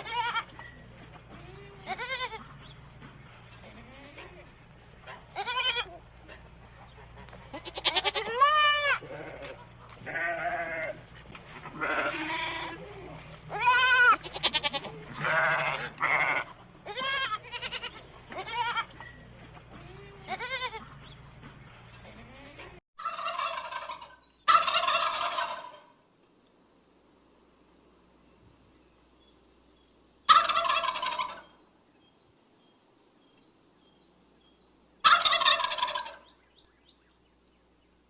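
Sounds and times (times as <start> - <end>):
goat bleating: 0.0 - 0.7, 1.3 - 2.6, 3.6 - 4.5, 5.3 - 6.2, 7.5 - 11.0, 11.6 - 19.0, 19.7 - 21.0
turkey gobbling: 23.0 - 25.9, 30.3 - 31.5, 35.0 - 36.3.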